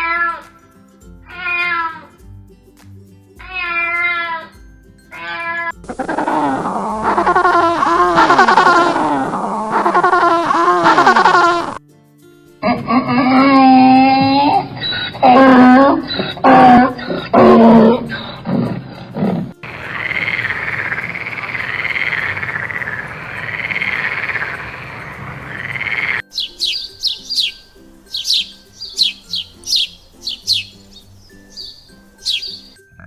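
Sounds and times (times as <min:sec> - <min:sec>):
wailing animal calls: 0:00.0 - 0:00.5, 0:03.4 - 0:11.8, 0:12.6 - 0:26.2
bird singing high notes: 0:13.3 - 0:18.5, 0:19.6 - 0:32.9
noisy wavering tone: 0:19.6 - 0:26.2.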